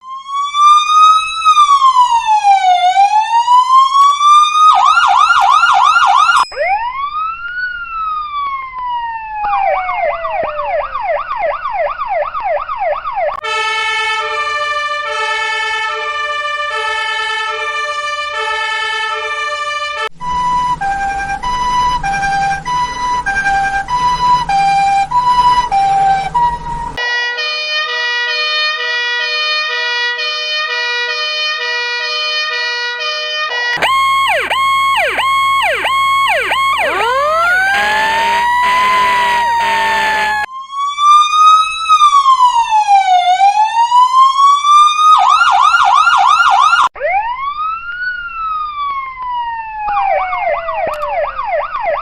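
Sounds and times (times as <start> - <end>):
yelping siren: 0.0 - 14.6, 20.1 - 27.0, 33.8 - 52.0
two-tone siren: 0.0 - 52.0
wailing siren: 0.0 - 52.0
steady electronic chord: 33.8 - 40.5.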